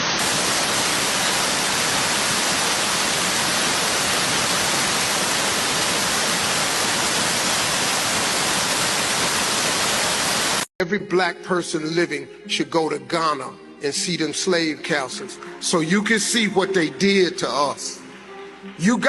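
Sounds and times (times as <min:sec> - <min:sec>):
loud rushing hiss: 0:00.0 - 0:10.7.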